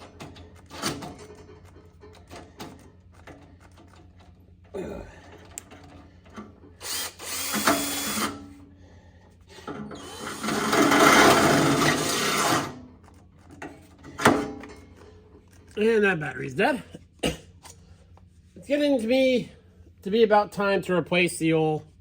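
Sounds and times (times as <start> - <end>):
cordless drill boring: 6.8 - 8.4, 9.8 - 12.8.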